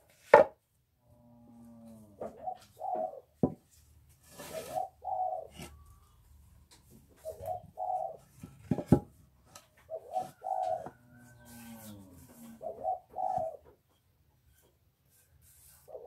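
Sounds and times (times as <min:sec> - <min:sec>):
dove cooing: 0:01.8 - 0:03.4, 0:04.3 - 0:06.2, 0:07.2 - 0:08.6, 0:09.9 - 0:13.7.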